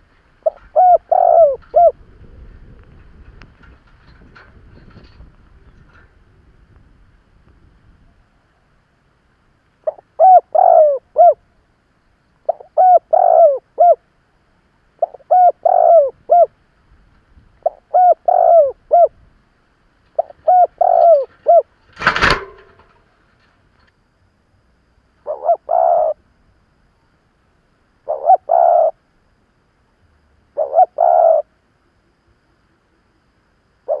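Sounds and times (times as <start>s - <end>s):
dove cooing: 0.0s - 3.3s, 9.8s - 11.4s, 12.4s - 14.0s, 15.0s - 16.6s, 17.6s - 19.3s, 20.2s - 21.8s, 25.2s - 26.2s, 28.0s - 29.0s, 30.5s - 31.6s.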